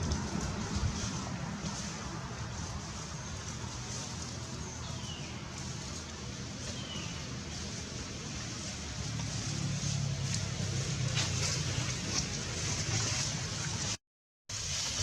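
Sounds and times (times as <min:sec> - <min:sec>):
low rumble: 0:00.0 - 0:04.4.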